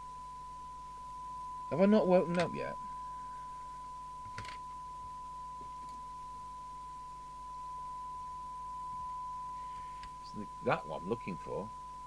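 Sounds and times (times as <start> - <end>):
radio test tone: 1.6 - 6.3, 8.6 - 12.0.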